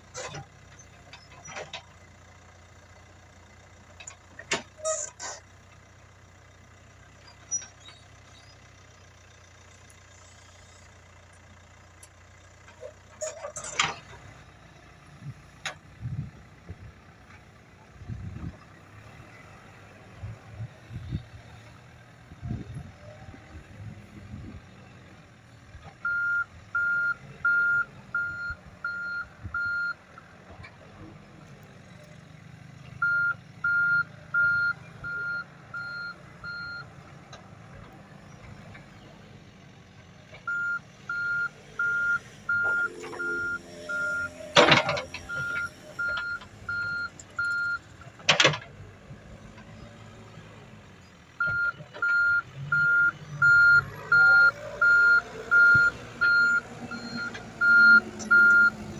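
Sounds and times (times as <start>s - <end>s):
diesel engine running: 0.0s - 58.9s
reverse alarm beeping: 26.1s - 30.0s, 40.5s - 47.8s, 51.4s - 58.8s.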